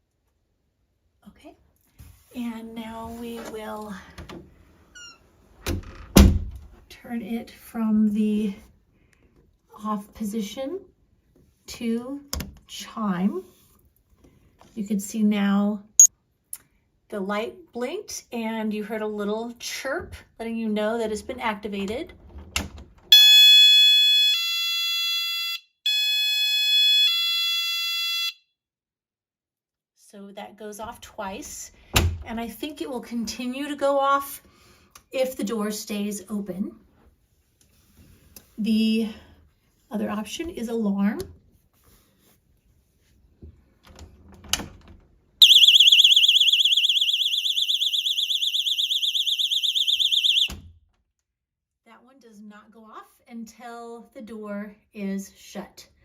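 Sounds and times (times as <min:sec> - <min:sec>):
shrill warbling alarm siren: 0:45.4 - 0:50.6.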